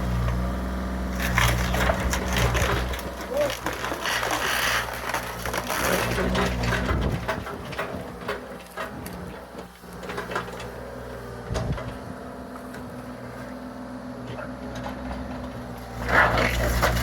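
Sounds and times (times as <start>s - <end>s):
excavator engine running: 0.0s - 17.0s
wood and debris cracking: 1.0s - 11.0s, 14.8s - 17.0s.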